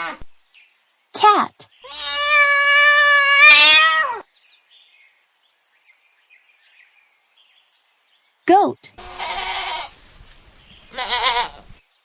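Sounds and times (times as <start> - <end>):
cat meowing: 1.8 - 4.2, 9.0 - 9.9.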